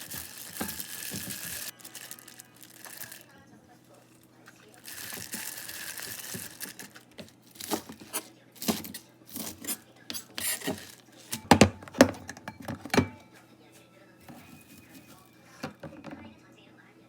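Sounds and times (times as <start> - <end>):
packaging rustling: 0.0 - 11.6, 14.2 - 15.3.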